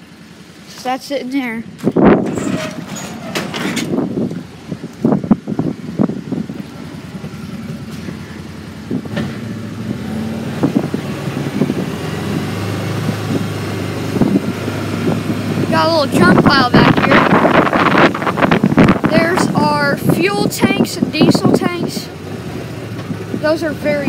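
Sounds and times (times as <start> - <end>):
vehicle engine running: 0.0 - 24.0
knocks and rattles: 1.8 - 5.4.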